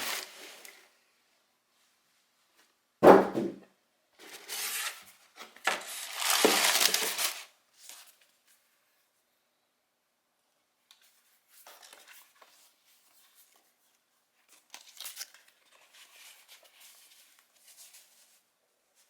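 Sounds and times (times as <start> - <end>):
packaging rustling and tearing: 0.0 - 0.8, 4.2 - 8.2, 14.5 - 18.0.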